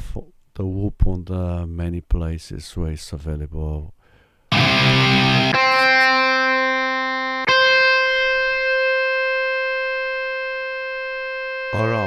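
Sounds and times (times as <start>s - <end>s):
sampled guitar notes: 4.5s - 12.0s.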